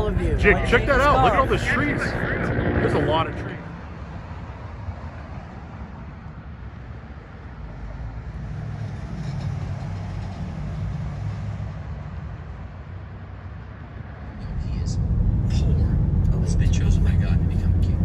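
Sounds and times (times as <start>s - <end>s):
vehicle engine rumble: 0.0s - 4.6s, 14.2s - 18.0s.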